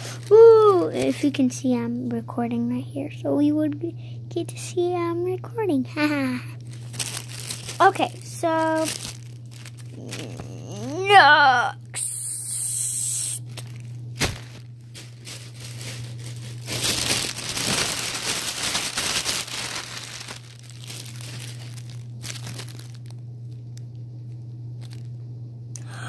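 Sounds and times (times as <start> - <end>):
plastic packaging crinkling: 0.0 - 1.4, 6.1 - 11.1, 13.1 - 25.2
low hum: 6.1 - 26.0.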